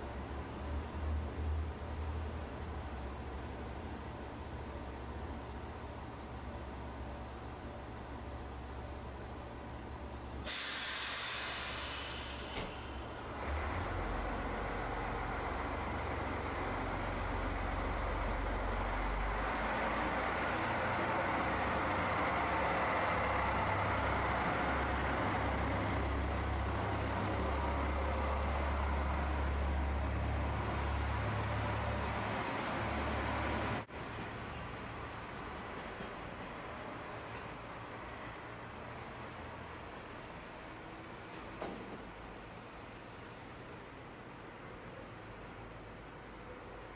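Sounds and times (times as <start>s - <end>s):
train engine rumble: 0.0s - 46.9s
air hissing: 10.5s - 13.1s.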